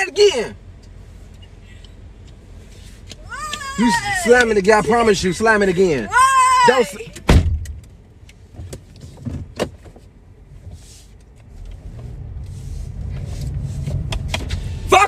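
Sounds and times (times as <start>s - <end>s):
car rumbling: 0.0s - 15.0s
car door slamming: 7.1s - 7.8s.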